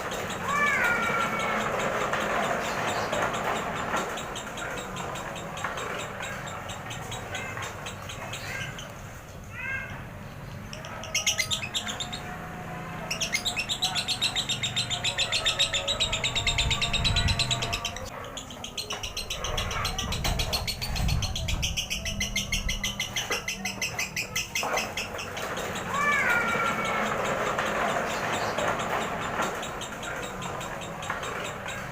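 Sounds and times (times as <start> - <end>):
lovebird chattering song: 10.6 - 12.4, 13.1 - 31.9.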